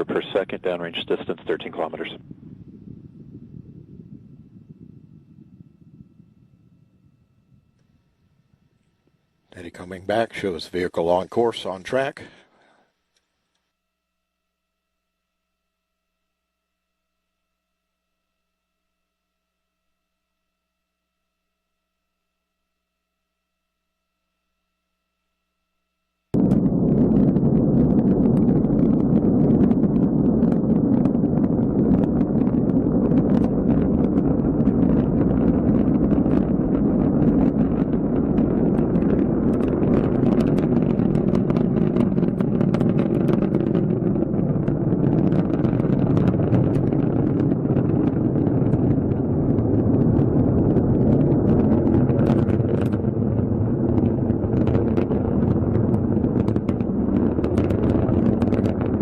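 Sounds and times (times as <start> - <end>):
rocket engine roar: 0.0 - 8.9, 26.4 - 59.0.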